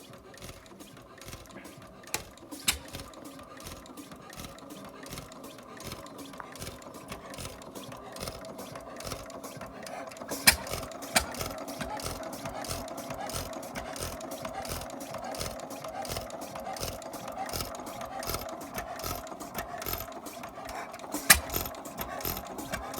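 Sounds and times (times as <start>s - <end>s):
stationary engine clattering: 0.0s - 22.9s
sharp clicks: 0.3s - 22.9s.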